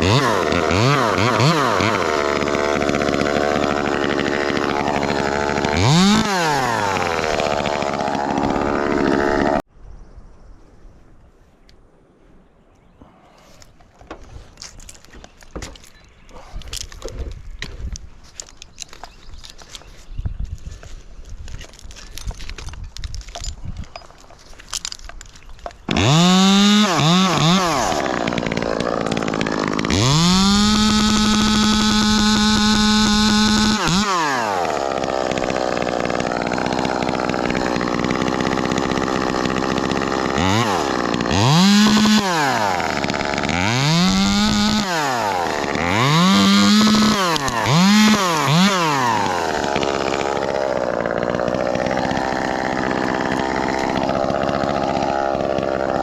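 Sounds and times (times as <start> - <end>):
chainsaw revving and idling: 0.0 - 9.7, 25.9 - 56.0.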